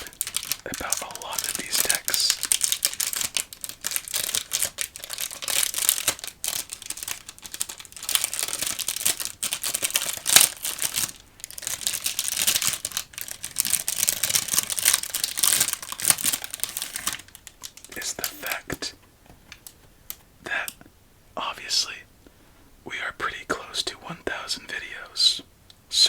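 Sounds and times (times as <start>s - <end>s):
plastic wrapping crinkling: 0.0s - 20.8s.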